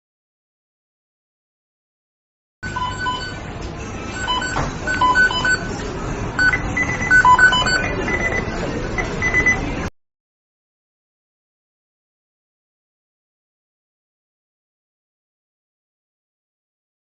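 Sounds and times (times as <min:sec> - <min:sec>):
short electronic beeps: 0:02.6 - 0:03.4, 0:04.1 - 0:05.8, 0:06.4 - 0:09.7.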